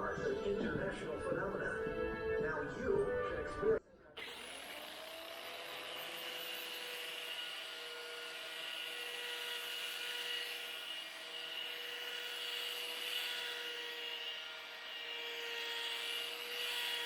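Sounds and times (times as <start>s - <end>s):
power tool motor whine: 4.2s - 17.0s.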